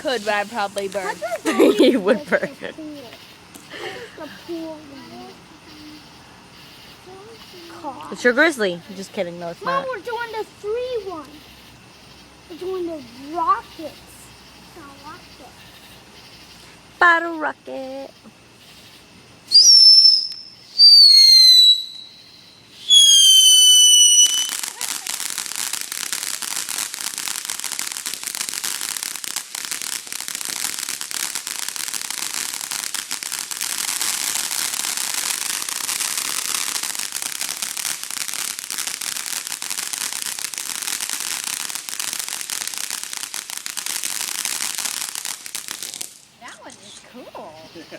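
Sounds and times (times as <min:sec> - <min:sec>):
fireworks crackling: 0:00.0 - 0:47.9
firework whistles falling in pitch: 0:19.5 - 0:28.1.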